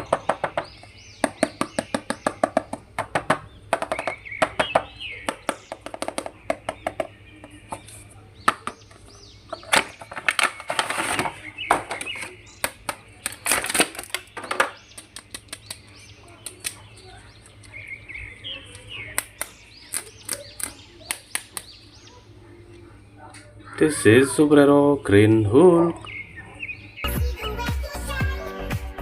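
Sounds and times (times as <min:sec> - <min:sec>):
sharp plastic clicks: 0:11.8 - 0:17.8, 0:18.6 - 0:21.8
plastic packaging crinkling: 0:13.2 - 0:14.4.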